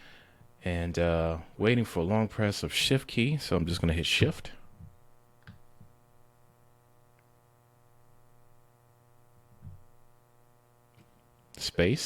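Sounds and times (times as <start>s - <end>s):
faint electrical hum: 0.0s - 12.0s.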